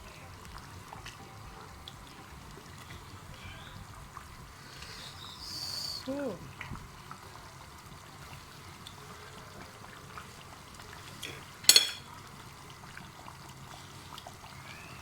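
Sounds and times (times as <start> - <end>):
soup bubbling in a pot: 0.0 - 15.0.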